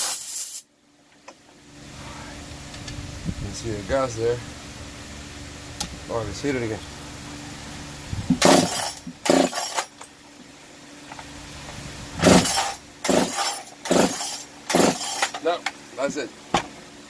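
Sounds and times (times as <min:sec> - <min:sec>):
recoil starter pulls: 0:12.2 - 0:15.5.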